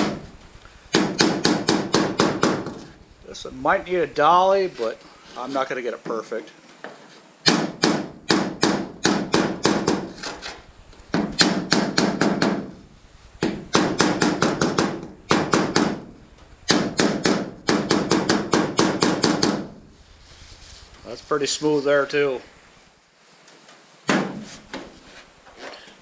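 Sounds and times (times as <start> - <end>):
hammer tapping metal hull: 13.4 - 16.1, 16.7 - 19.7.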